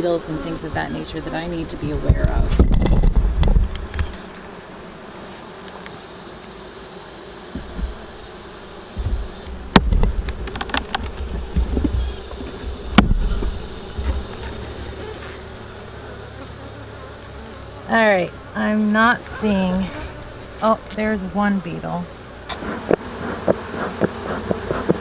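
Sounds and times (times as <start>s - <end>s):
bees buzzing: 0.0s - 25.0s
sharp knocks: 8.9s - 14.6s.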